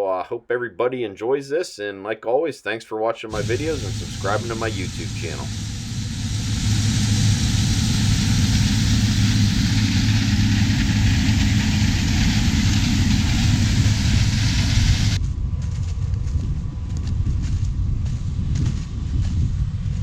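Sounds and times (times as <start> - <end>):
broad hiss: 3.3 - 15.2
heavy machinery engine running: 3.3 - 15.2.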